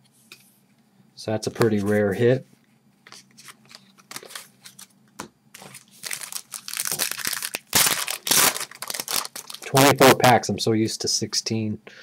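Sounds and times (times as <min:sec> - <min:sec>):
card pack wrapper crinkling: 0:03.1 - 0:04.9, 0:05.6 - 0:10.2.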